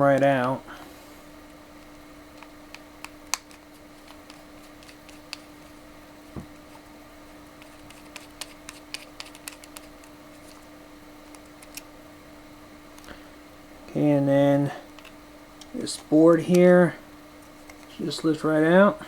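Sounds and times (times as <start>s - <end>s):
steady low hum: 0.0s - 19.0s
screwdriver clicking on plastic: 7.6s - 10.1s.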